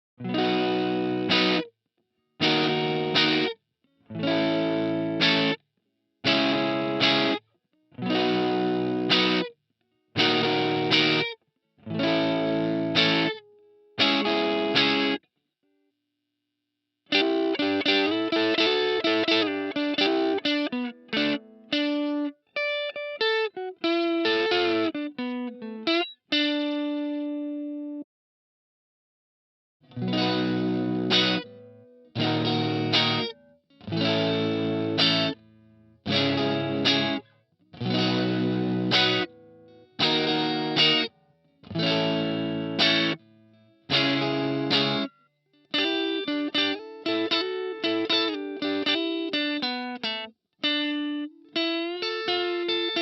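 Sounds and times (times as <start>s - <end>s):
electric guitar single notes: 0.2s - 1.7s, 2.4s - 5.6s, 8.0s - 9.5s, 10.2s - 11.3s, 11.9s - 15.2s, 17.1s - 28.0s, 29.9s - 35.4s, 36.0s - 37.2s, 37.8s - 43.2s, 43.8s - 45.1s, 45.7s - 53.0s
electric guitar strummed chords: 0.2s - 1.7s, 2.4s - 5.6s, 6.2s - 7.4s, 8.0s - 9.5s, 10.2s - 15.2s, 17.1s - 28.0s, 29.9s - 35.4s, 36.0s - 45.1s, 45.7s - 53.0s.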